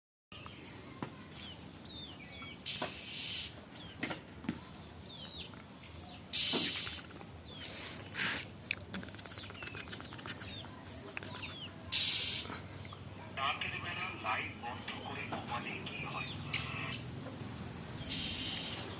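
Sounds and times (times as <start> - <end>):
small birds chirping: 0.3 - 18.9
bursts of hissing noise: 6.3 - 8.6, 11.9 - 12.5, 18.1 - 18.9.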